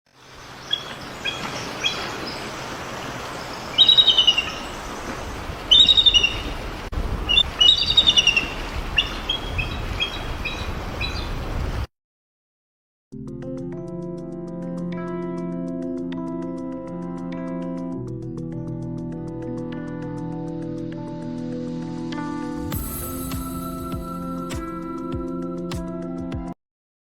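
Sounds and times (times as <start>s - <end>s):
steady background hiss: 0.2s - 6.6s
birds chirping and trilling: 0.2s - 11.4s.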